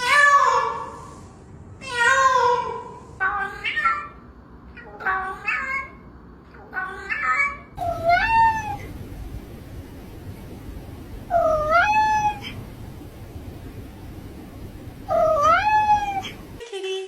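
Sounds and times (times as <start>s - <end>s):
cat meowing: 6.6s - 8.9s, 11.3s - 12.6s, 15.1s - 16.5s
low steady rumble: 7.6s - 16.6s.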